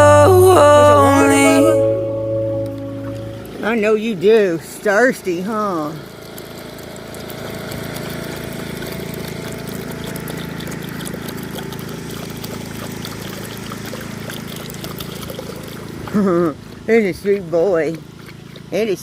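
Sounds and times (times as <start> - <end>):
steady low hum: 0.0 - 3.9
dog lapping water: 5.2 - 19.0.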